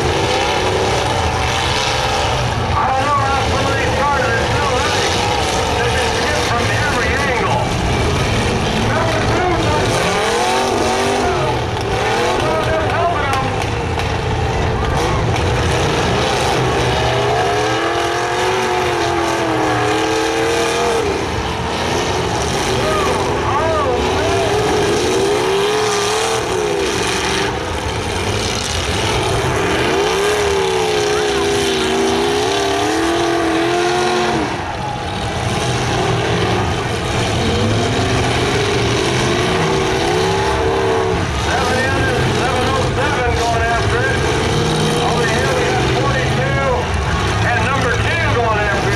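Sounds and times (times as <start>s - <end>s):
car engines running hard: 0.0s - 48.9s
dense low rumble: 2.4s - 25.7s.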